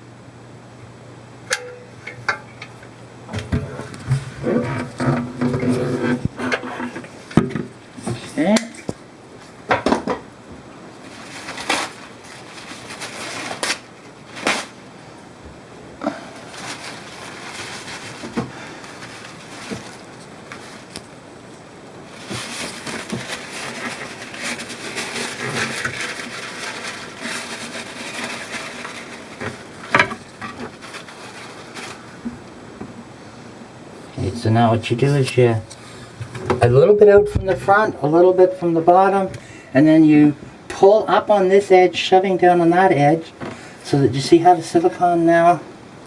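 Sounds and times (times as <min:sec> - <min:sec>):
rustling and scraping: 0:01.5 - 0:33.0, 0:34.0 - 0:39.5.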